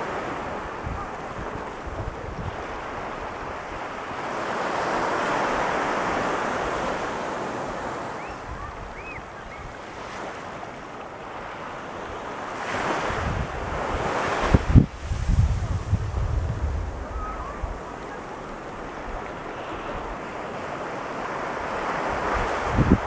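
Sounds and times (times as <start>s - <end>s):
ocean waves breaking on beach: 0.0s - 23.0s
wind buffeting microphone: 0.2s - 4.1s, 7.8s - 9.9s, 12.9s - 20.2s, 21.8s - 23.0s.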